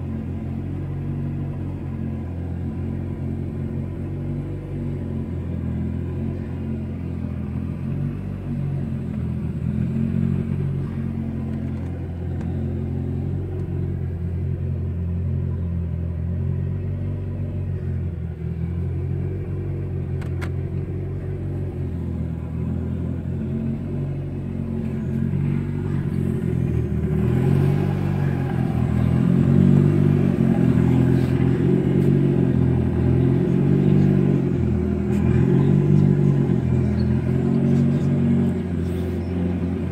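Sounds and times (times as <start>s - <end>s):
car engine low rumble: 0.0s - 39.9s.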